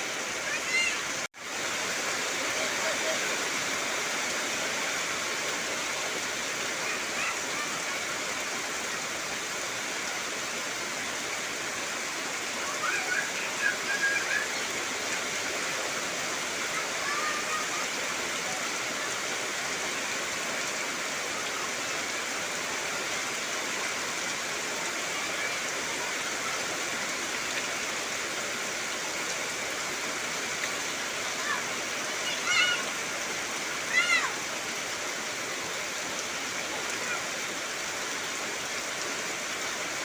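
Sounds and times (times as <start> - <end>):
heavy rain on trees: 0.0 - 40.0.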